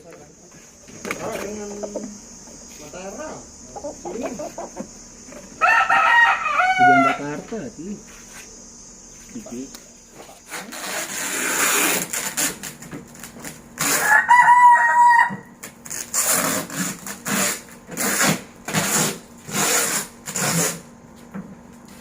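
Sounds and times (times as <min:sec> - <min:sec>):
rooster crowing: 0:05.5 - 0:07.4, 0:13.8 - 0:15.6
short rasping noises: 0:10.2 - 0:12.8, 0:15.8 - 0:20.9.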